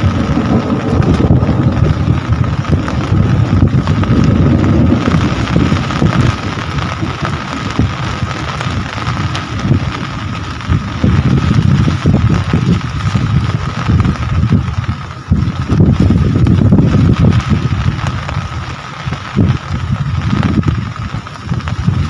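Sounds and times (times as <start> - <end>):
deep uneven rumble: 0.0 - 22.0
heavy rain: 0.0 - 22.0.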